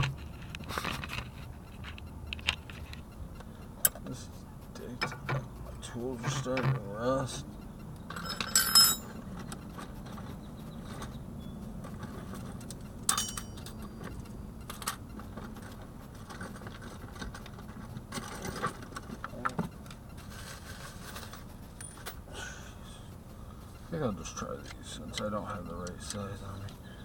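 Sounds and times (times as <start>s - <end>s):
steady low hum: 0.0s - 27.0s
metal hand tools clinking: 8.1s - 10.3s, 13.0s - 14.1s.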